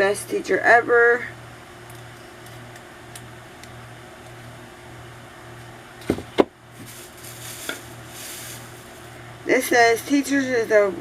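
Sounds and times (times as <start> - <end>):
steady low hum: 0.0 - 11.0
rustling: 6.8 - 9.2.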